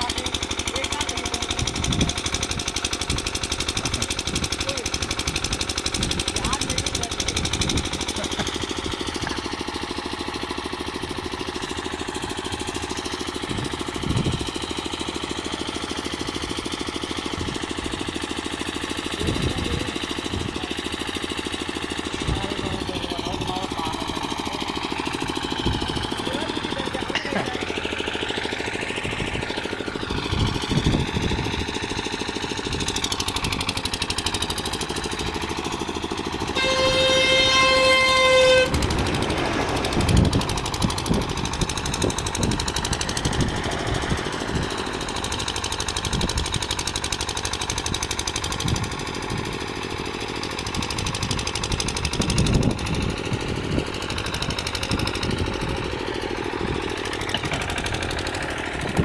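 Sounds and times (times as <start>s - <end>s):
engine running with pulsing beat: 0.0s - 59.0s
vehicle horn: 36.4s - 39.0s.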